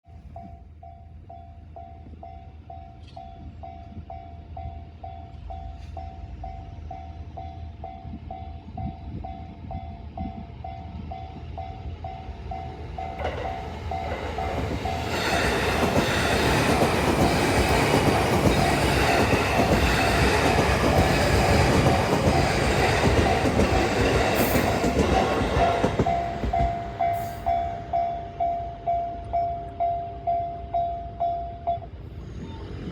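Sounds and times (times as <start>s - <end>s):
electric train running: 11.7s - 29.0s.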